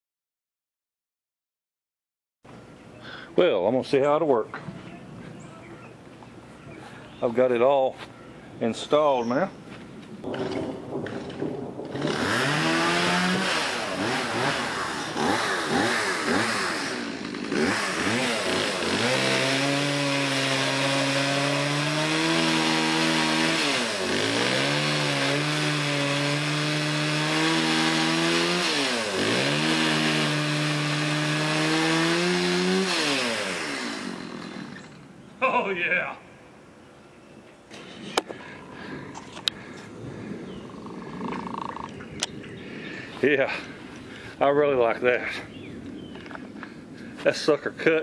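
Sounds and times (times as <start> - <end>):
chainsaw revving and cutting wood: 11.8 - 35.1.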